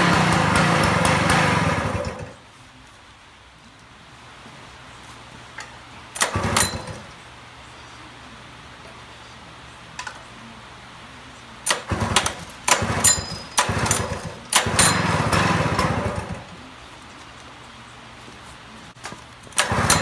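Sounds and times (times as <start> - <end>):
small engine pull-starting: 0.0 - 2.4, 6.2 - 7.1, 11.6 - 16.6, 19.5 - 20.0.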